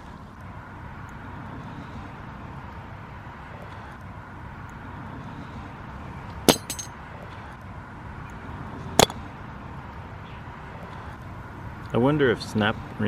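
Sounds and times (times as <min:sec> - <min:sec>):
sharp clinks: 0:06.5 - 0:06.9.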